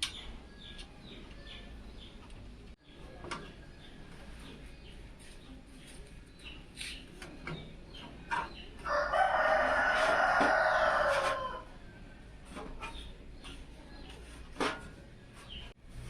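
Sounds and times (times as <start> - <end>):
rooster crowing: 8.8 - 11.8.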